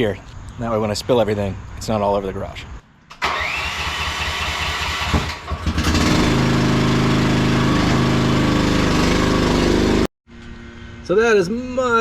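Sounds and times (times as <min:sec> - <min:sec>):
small gasoline engine running: 0:03.2 - 0:10.1.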